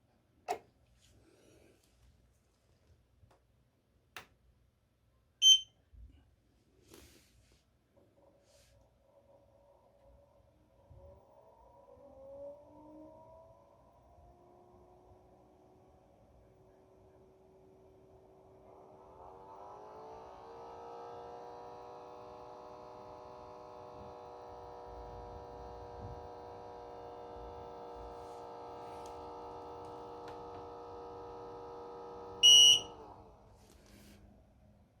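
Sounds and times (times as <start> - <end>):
loud short beep: 5.4 - 5.7, 32.4 - 32.9
air purifier tonal buzzing hum: 24.8 - 33.2.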